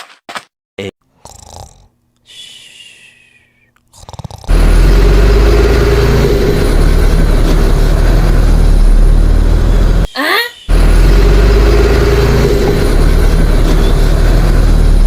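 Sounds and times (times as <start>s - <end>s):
engine running with deep rumble: 4.5s - 10.1s, 10.7s - 15.0s
short rising tone: 4.5s - 10.1s.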